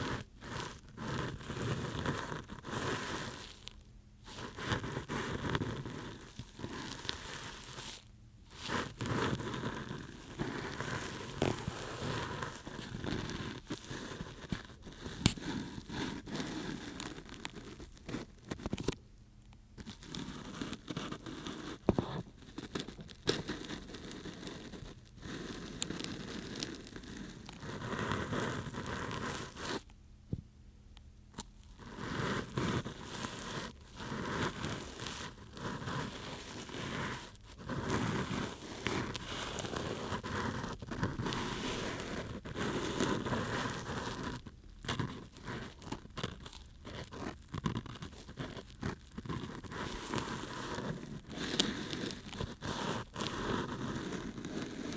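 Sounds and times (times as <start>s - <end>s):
ear pick scraping microphone: 4.3s - 18.9s, 31.7s - 54.9s.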